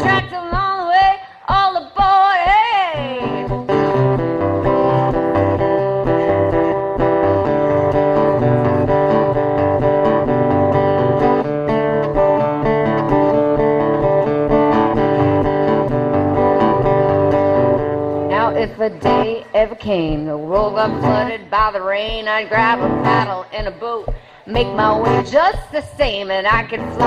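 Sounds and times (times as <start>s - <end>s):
guitar playing: 0.0s - 27.0s
bass line: 2.9s - 19.3s.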